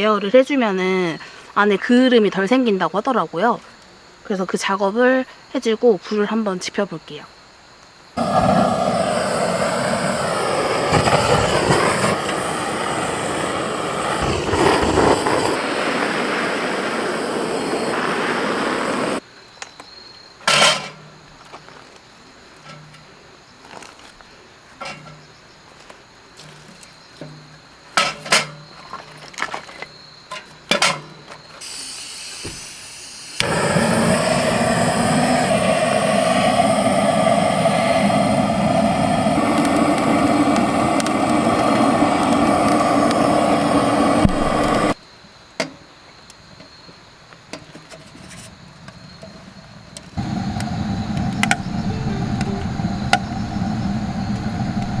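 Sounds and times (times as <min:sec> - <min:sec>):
gas torch hissing: 0:08.2 - 0:19.2, 0:31.6 - 0:45.0, 0:50.2 - 0:55.0.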